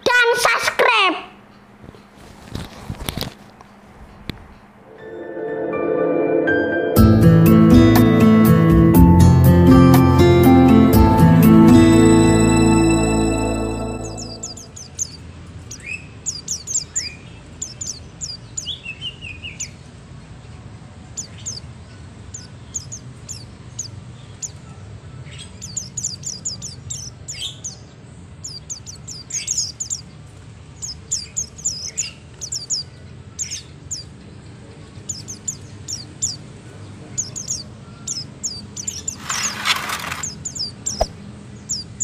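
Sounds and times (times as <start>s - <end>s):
birds chirping high and thin: 11.5s - 19.9s, 21.1s - 42.0s.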